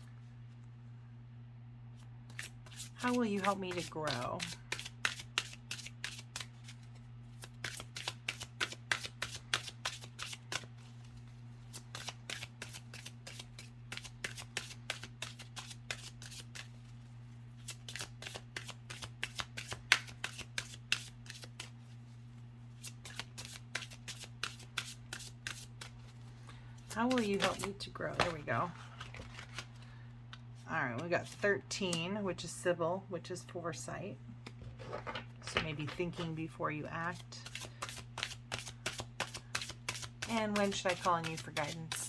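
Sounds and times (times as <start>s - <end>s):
cards being shuffled: 2.3s - 17.0s, 17.6s - 21.9s, 22.8s - 30.4s, 37.1s - 42.0s.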